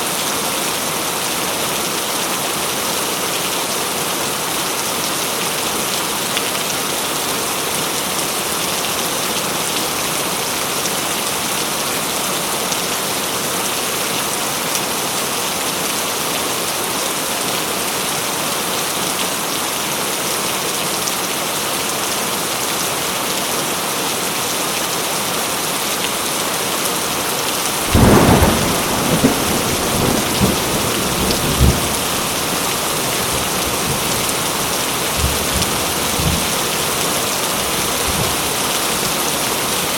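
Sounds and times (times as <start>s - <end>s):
heavy rain falling: 0.0s - 39.9s
thunder clap and rumbling: 27.8s - 36.6s.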